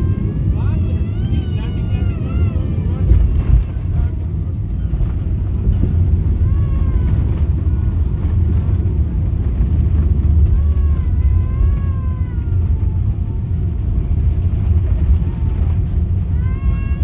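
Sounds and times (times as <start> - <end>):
airliner cabin rumble: 0.0 - 17.0.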